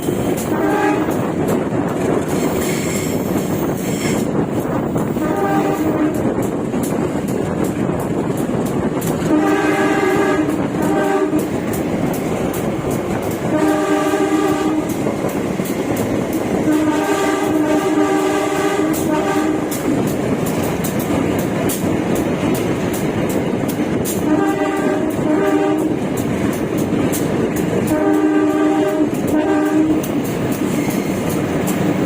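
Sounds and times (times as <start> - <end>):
train rumble: 0.0 - 32.0
wheels clicking over rail joints: 0.0 - 32.0
locomotive horn blasts: 0.4 - 1.3, 5.2 - 6.3, 9.2 - 11.6, 13.4 - 15.0, 16.6 - 19.8, 24.2 - 26.0, 27.8 - 30.1.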